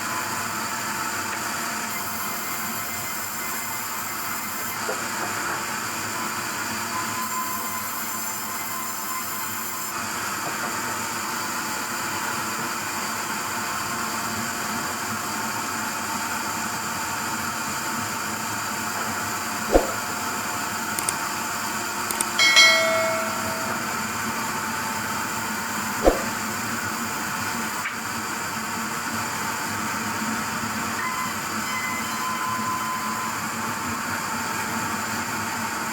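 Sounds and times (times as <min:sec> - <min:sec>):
sharp knocks: 0:19.7 - 0:20.1, 0:22.1 - 0:23.9, 0:26.0 - 0:26.4
ringing clatter: 0:22.1 - 0:24.0.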